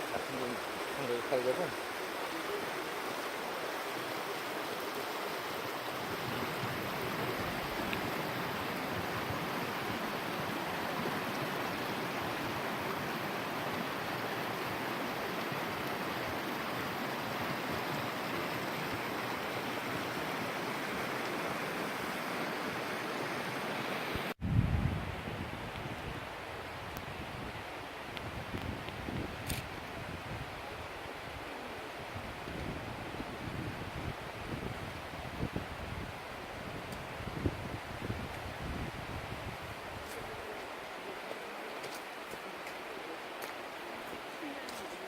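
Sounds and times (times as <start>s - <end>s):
mountain stream rushing: 0.0s - 24.4s, 25.1s - 45.0s
wind rumble on microphone: 24.2s - 40.5s.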